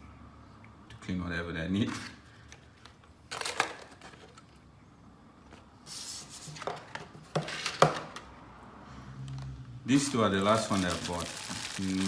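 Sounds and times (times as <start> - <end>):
packaging rustle: 9.9 - 12.0.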